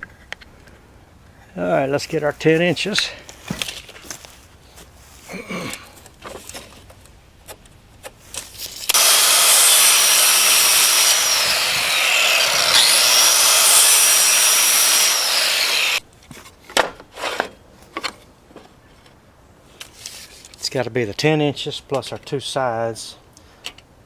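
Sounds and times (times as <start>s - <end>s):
electric saw cutting plywood: 8.9s - 16.0s.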